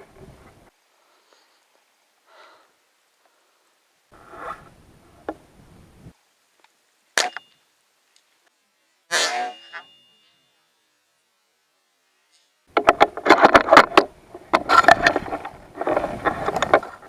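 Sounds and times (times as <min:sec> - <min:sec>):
faint wind noise: 0:00.0 - 0:01.8, 0:02.6 - 0:06.5, 0:12.8 - 0:17.0
rustling: 0:12.2 - 0:17.0.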